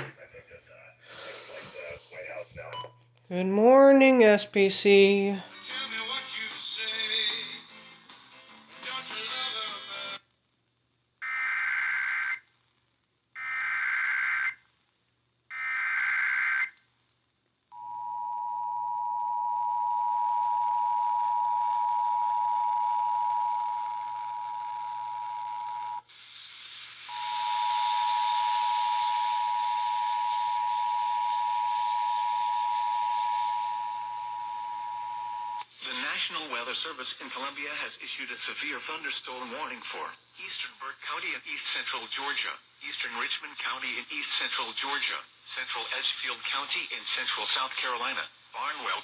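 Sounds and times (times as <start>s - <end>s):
radio hiss: 0.0s - 2.8s, 26.1s - 27.2s, 35.7s - 49.0s.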